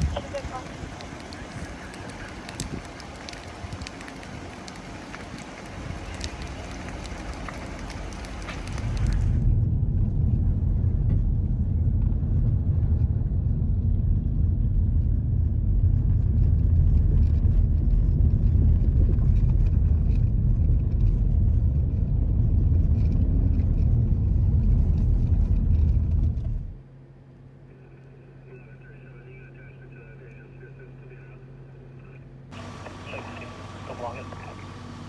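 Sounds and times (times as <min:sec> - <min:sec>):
loud low rumble: 0:00.0 - 0:26.9.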